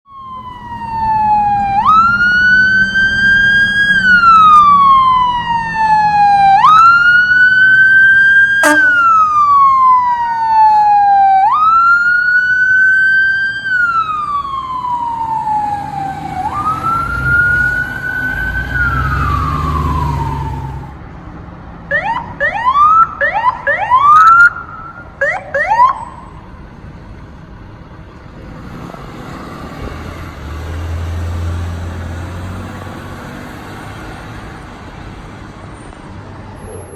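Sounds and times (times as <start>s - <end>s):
siren wailing: 0.1s - 21.0s, 21.9s - 26.5s
siren whoops: 0.1s - 21.0s, 21.9s - 26.4s
heavy vehicle engine rumbling: 0.2s - 21.9s, 26.0s - 36.9s.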